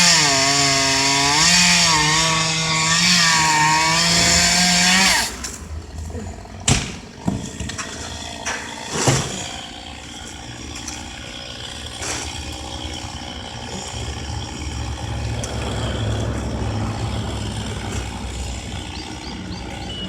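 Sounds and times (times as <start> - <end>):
low engine rumble: 3.7 - 8.1, 11.8 - 20.0.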